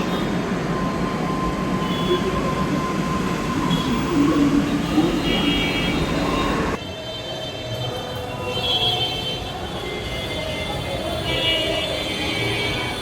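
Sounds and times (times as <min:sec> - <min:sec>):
moving vehicle rumbling: 0:00.0 - 0:06.8.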